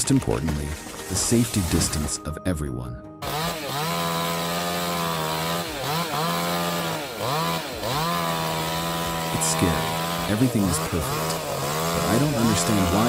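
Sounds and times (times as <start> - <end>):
chainsaw running at high revs: 3.2 - 13.0.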